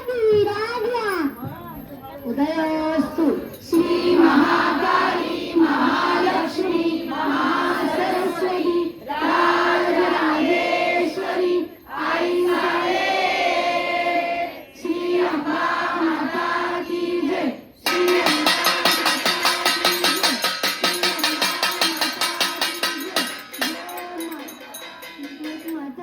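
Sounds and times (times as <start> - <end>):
group of voices singing: 3.6 - 25.6
rhythmic music with fast percussion: 17.8 - 26.0.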